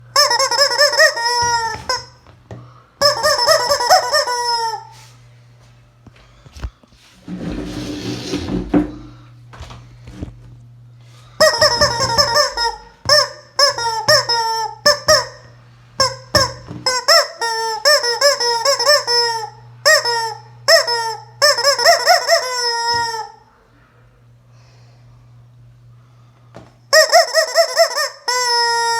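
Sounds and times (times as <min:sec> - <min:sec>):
rubber chicken toy squawking: 0:00.2 - 0:02.2, 0:03.0 - 0:04.9, 0:11.4 - 0:23.4, 0:26.9 - 0:28.9.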